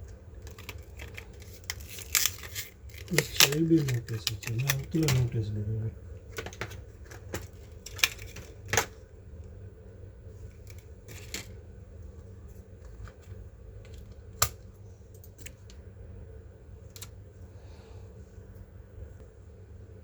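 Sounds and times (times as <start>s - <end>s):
steady low hum: 0.0s - 20.0s
clicks of laptop parts handled: 6.4s - 9.0s.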